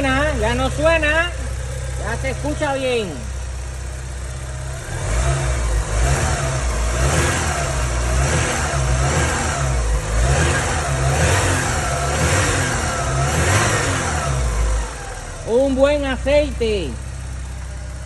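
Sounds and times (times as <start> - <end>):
car engine revving: 0.0 - 18.0
man speaking: 2.0 - 3.3, 15.5 - 17.0.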